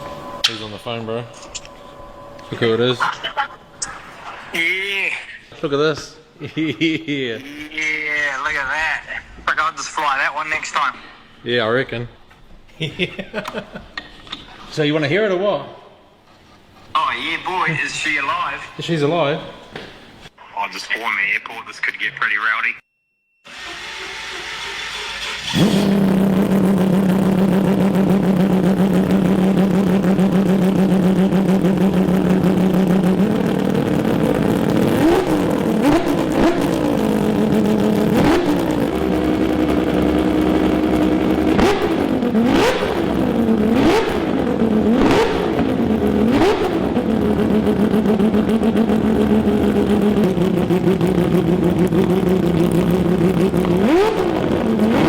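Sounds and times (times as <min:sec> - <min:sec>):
rotary engine revving: 0:23.5 - 0:55.0
exhaust pops: 0:25.2 - 0:55.0.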